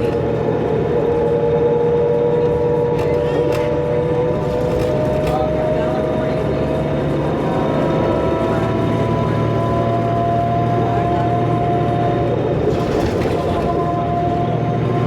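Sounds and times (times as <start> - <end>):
bus diesel engine drone: 0.0 - 15.0.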